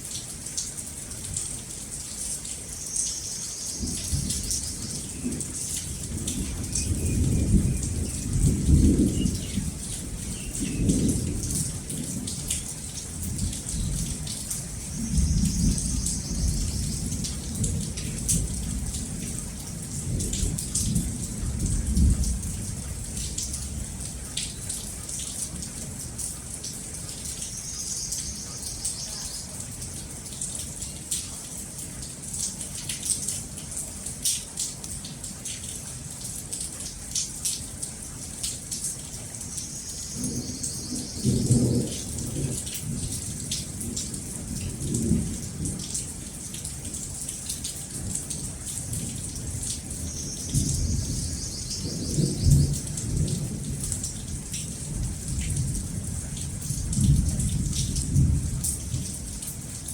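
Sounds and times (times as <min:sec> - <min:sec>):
steady rain falling: 0:00.0 - 0:59.9
thunder rumbling: 0:03.8 - 0:12.6, 0:40.1 - 0:45.8.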